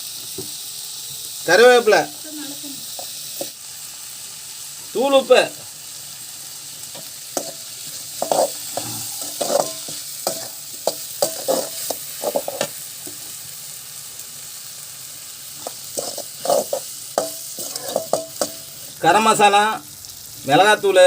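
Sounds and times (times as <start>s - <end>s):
masala sizzling in oil: 0.0s - 21.0s
spoon scraping and clinking pan: 7.4s - 12.8s, 15.6s - 18.7s.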